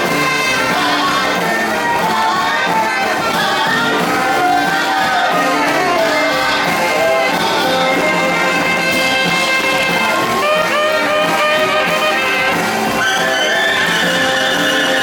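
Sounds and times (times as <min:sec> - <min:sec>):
live band with brass: 0:00.0 - 0:15.0.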